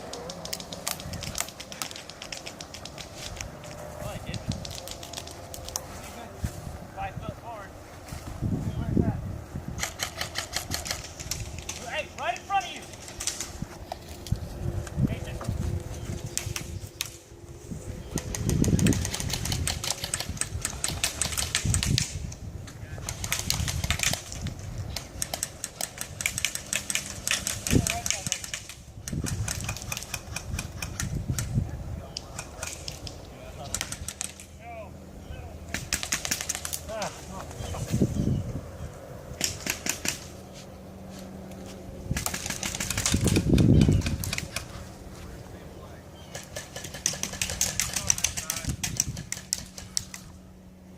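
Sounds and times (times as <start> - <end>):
airsoft guns firing: 35.7 - 36.8, 42.1 - 44.6, 46.3 - 50.0.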